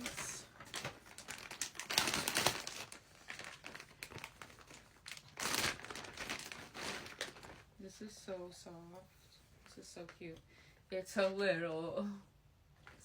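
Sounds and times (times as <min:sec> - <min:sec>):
packaging crinkling and rustling: 0:00.0 - 0:07.8.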